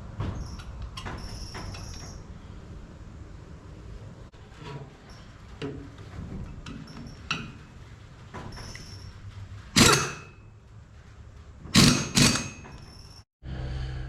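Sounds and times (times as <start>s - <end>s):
hammer striking steel: 9.8s - 10.5s, 11.8s - 12.7s.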